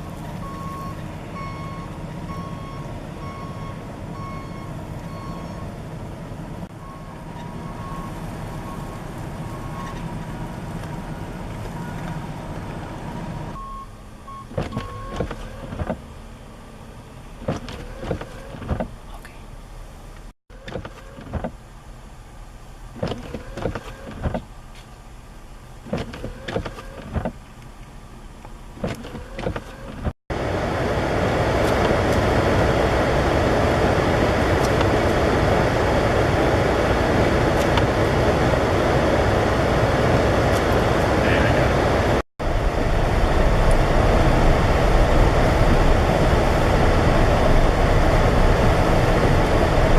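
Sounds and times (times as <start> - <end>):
vehicle running: 0.0 - 49.9
loud rushing noise: 30.4 - 49.9.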